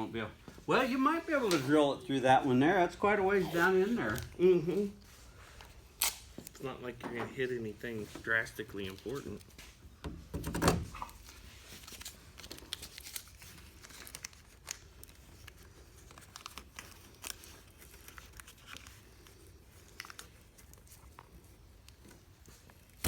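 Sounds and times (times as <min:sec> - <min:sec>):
tape crinkling and clicking: 0:05.6 - 0:06.7, 0:08.6 - 0:09.8, 0:10.9 - 0:23.0.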